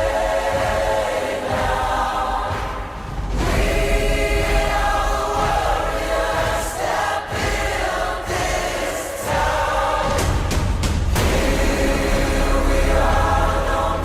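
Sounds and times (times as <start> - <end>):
choir holding wordless notes: 0.0 - 14.0
steady low bass: 11.2 - 14.0.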